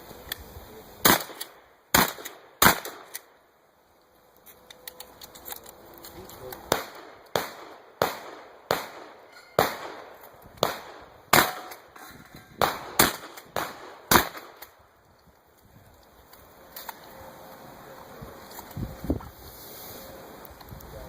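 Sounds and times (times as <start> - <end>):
shotgun firing: 1.0 - 3.3, 6.7 - 11.9, 12.6 - 14.6.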